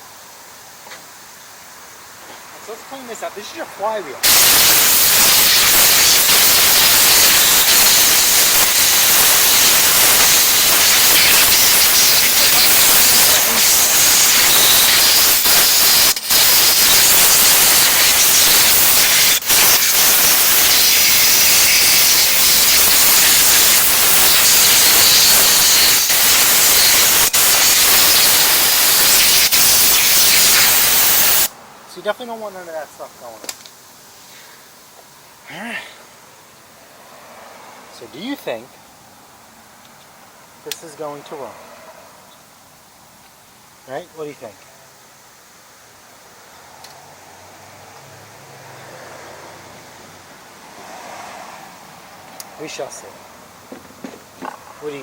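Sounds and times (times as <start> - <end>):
air blow gun hissing: 4.2 - 31.5.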